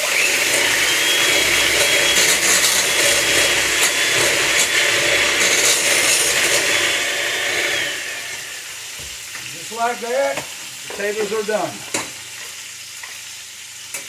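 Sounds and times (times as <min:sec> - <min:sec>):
electric mixer whining: 0:00.0 - 0:09.2.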